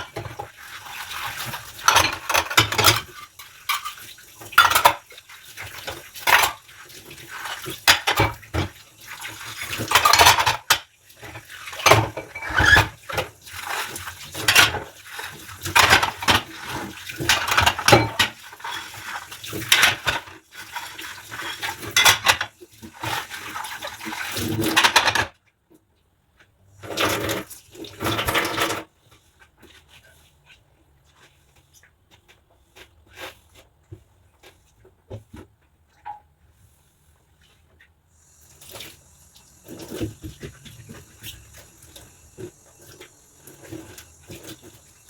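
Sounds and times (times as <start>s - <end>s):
water in sink: 0.0s - 25.7s, 26.3s - 45.0s
dishes and cutlery clattering: 1.7s - 5.0s, 9.8s - 10.8s, 15.7s - 16.5s, 17.2s - 18.8s, 21.5s - 22.5s, 24.4s - 25.3s.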